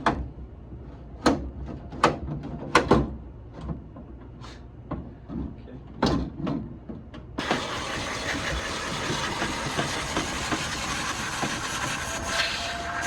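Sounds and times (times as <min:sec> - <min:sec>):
vacuum cleaner running: 0:07.4 - 0:13.0.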